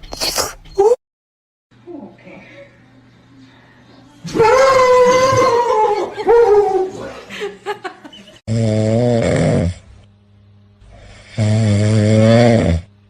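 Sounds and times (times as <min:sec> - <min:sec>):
loud buzzy snore: 0:08.5 - 0:10.0, 0:10.8 - 0:13.0.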